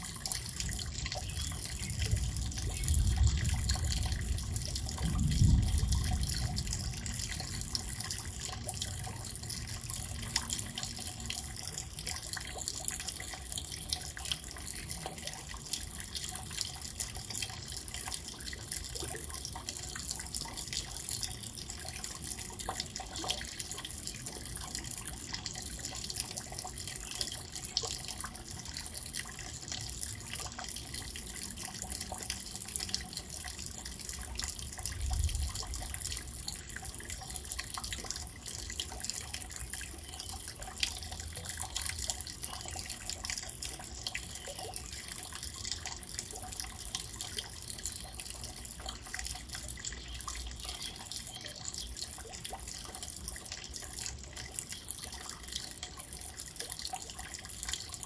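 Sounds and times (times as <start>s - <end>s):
rain falling: 2.2s - 8.4s.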